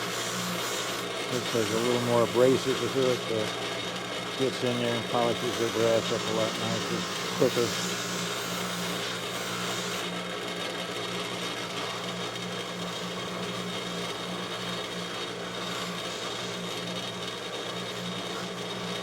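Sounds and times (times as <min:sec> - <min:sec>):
metal tool hissing on buffing wheel: 0:00.0 - 0:03.8, 0:04.4 - 0:10.0
buffing wheel motor humming: 0:00.0 - 0:19.0.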